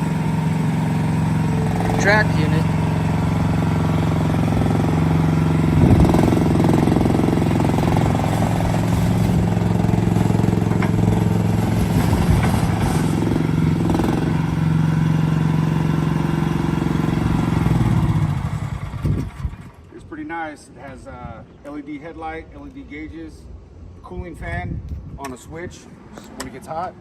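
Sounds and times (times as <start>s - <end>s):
gas engine running: 0.0s - 19.9s.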